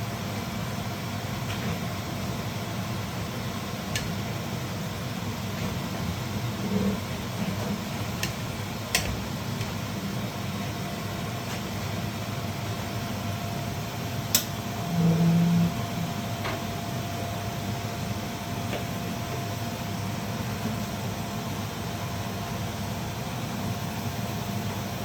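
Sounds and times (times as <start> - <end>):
low mechanical hum: 0.0 - 25.0
short low buzz: 14.8 - 16.1.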